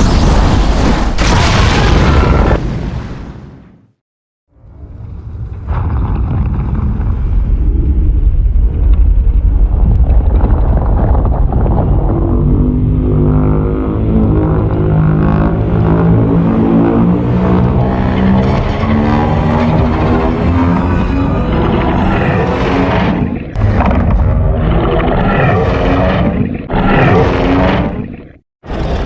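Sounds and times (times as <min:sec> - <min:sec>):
deep heavy monster rumble: 0:04.5 - 0:29.0.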